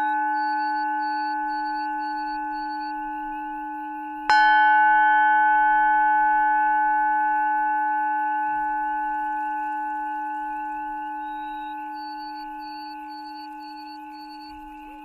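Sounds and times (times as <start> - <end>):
singing bowl ringing: 0.0 - 15.0
faint high beeping: 10.9 - 15.0.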